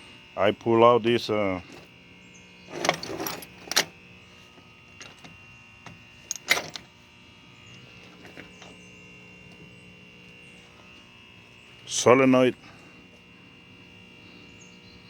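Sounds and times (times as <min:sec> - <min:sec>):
steady electrical hum: 0:00.0 - 0:15.0
metal part rattling and clinking: 0:02.7 - 0:04.0, 0:06.3 - 0:06.9.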